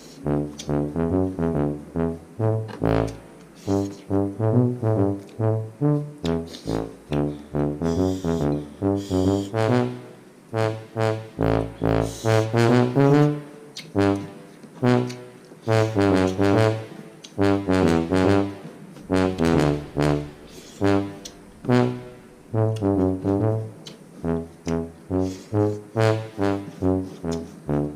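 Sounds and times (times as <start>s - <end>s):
bouncy brass music: 0.0s - 27.9s
bass line: 0.2s - 13.5s, 15.9s - 27.9s.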